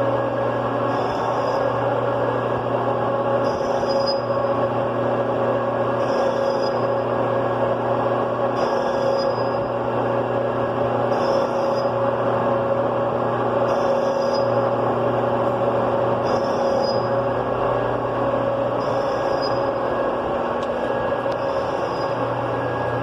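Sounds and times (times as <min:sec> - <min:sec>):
machine tool motor hum: 0:00.0 - 0:23.0.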